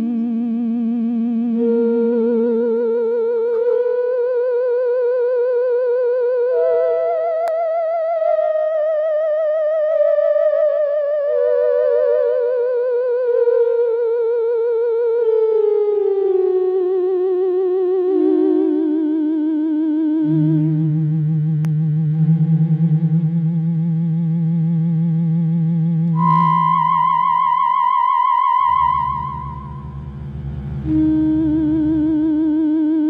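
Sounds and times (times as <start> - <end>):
eerie wailing tone with vibrato: 16.5 - 33.0.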